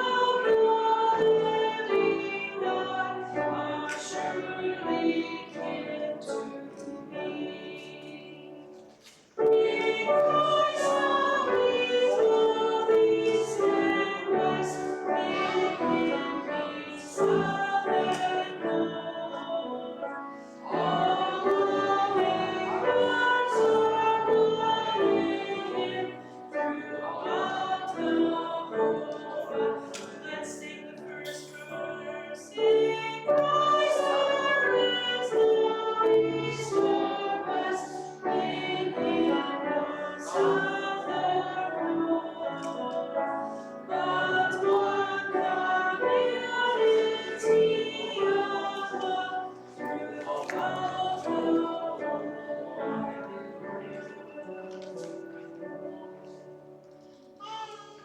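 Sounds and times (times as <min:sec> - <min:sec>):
group singing a hymn: 0:00.0 - 0:56.8.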